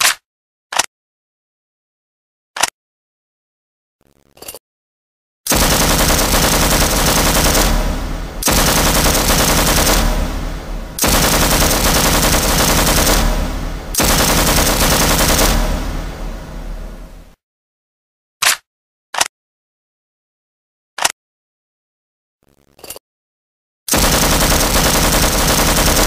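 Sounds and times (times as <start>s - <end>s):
machine gun automatic fire: 5.5s - 17.4s, 23.9s - 26.0s.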